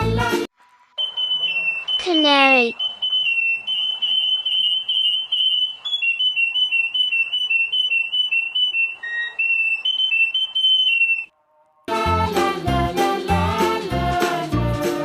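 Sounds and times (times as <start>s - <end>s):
canary trilling: 1.0s - 11.3s.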